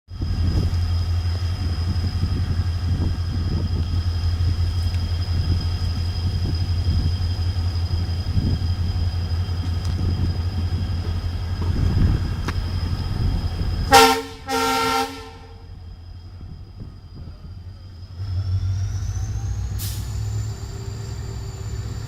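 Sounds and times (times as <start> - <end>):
bus engine droning: 0.1 - 22.0
bus horn blasts: 13.9 - 15.7.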